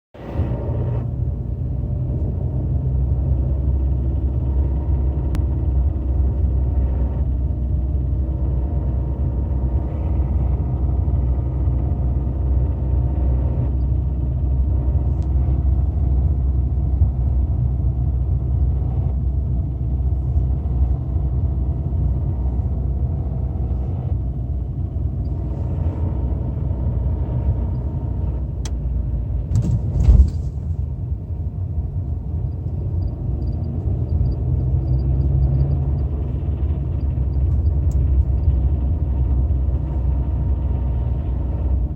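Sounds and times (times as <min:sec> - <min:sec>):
car engine running: 0:00.2 - 0:41.9
loud thump: 0:29.5 - 0:30.8.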